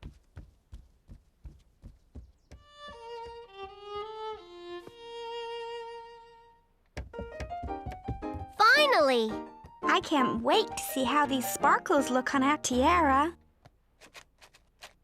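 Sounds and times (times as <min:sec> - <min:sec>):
violin melody: 0:02.6 - 0:08.6.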